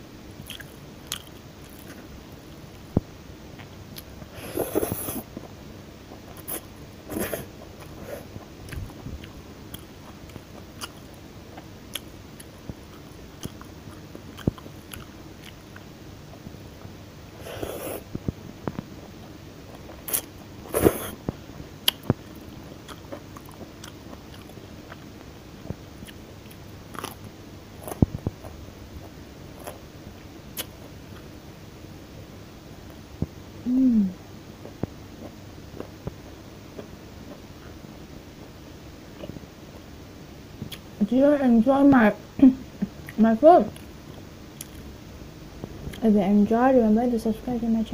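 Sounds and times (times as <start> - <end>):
person chewing food: 0.4 - 2.1, 6.1 - 16.4, 19.7 - 21.2, 21.8 - 29.8, 30.6 - 31.3, 34.6 - 37.8, 43.0 - 44.9.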